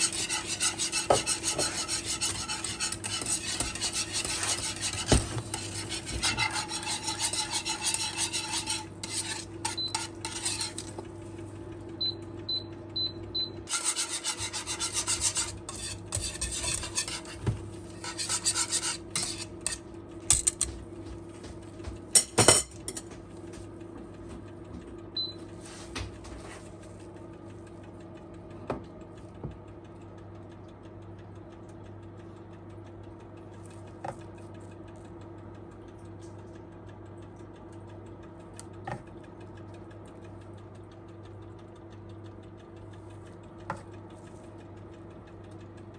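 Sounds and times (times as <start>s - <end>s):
utensil scraping a bowl: 0.0s - 11.0s, 13.7s - 20.6s
steady low hum: 0.0s - 45.9s.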